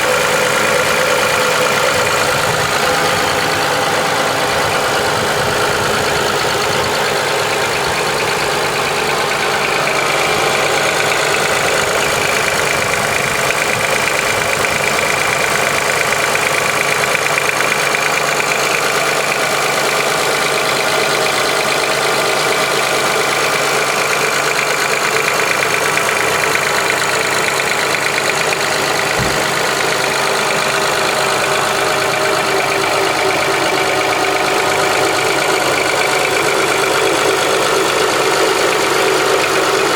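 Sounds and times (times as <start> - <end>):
car engine idling: 0.0 - 39.9
fast even engine ticking: 0.0 - 39.9
low thump: 29.1 - 29.9.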